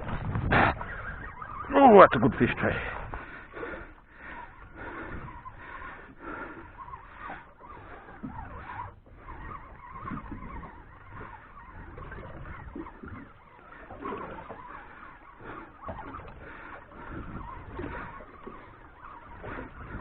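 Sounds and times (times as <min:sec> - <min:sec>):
wind rumble on microphone: 0:00.0 - 0:03.4, 0:07.8 - 0:14.9, 0:15.8 - 0:20.0
fishing reel whirring: 0:00.0 - 0:20.0.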